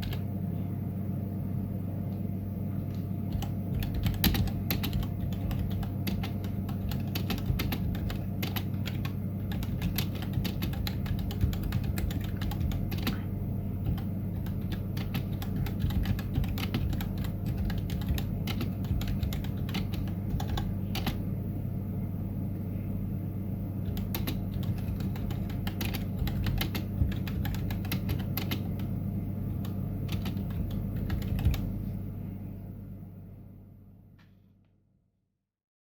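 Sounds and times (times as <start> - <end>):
mechanical keyboard typing: 0.0 - 0.2, 3.3 - 21.2, 23.8 - 28.9, 29.6 - 31.7.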